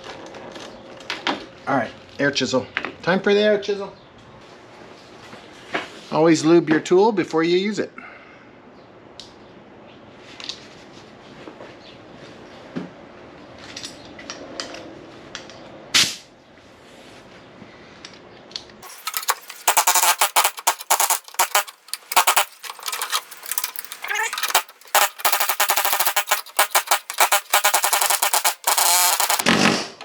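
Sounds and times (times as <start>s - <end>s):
sharp click: 18.8s - 29.4s.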